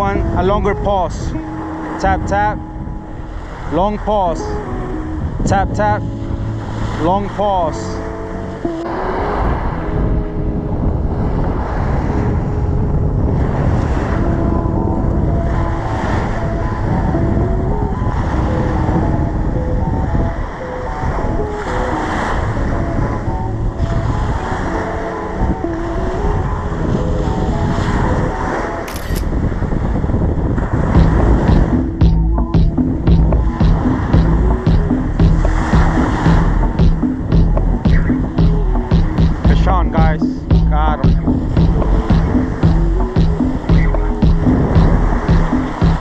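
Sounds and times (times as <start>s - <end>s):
background music: 0.0s - 11.2s, 31.0s - 46.0s
choppy water: 0.0s - 46.0s
wind buffeting microphone: 0.0s - 46.0s
heavy bass beat: 31.0s - 46.0s.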